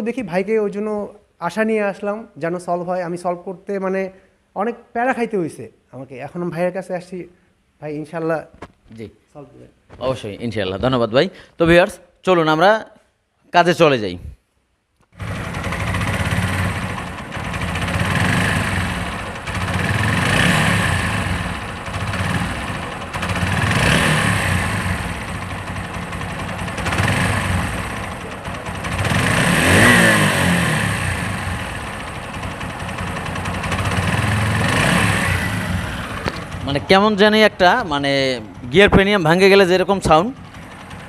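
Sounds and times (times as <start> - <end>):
engine knocking: 15.2 - 36.7
motorcycle engine revving: 15.2 - 41.0.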